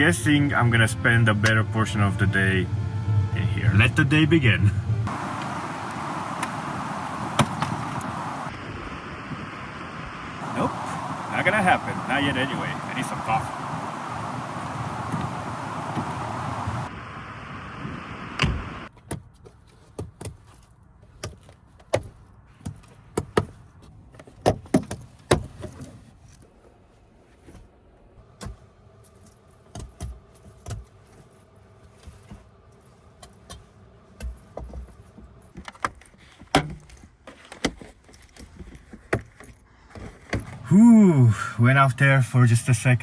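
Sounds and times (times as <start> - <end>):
gusty wind on microphone: 4.9 - 18.9.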